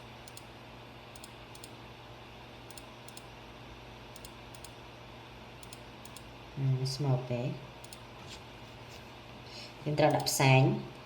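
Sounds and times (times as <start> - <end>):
faint low hum and hiss: 0.0 - 11.0
computer input clicks: 0.2 - 0.5, 1.2 - 1.8, 2.7 - 3.3, 4.2 - 4.8, 5.6 - 6.3, 7.8 - 8.0, 10.0 - 10.4.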